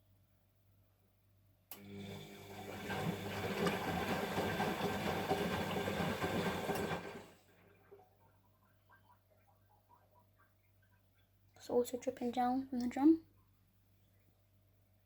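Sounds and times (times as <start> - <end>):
washing machine motor: 1.7 - 7.4
wet laundry tumbling in water: 2.7 - 7.2.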